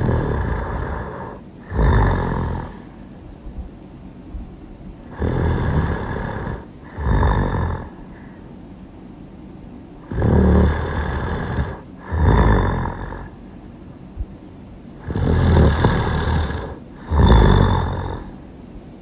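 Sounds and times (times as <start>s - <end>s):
person snoring loudly: 0.0s - 2.9s, 5.1s - 8.1s, 10.0s - 13.4s, 15.0s - 18.4s.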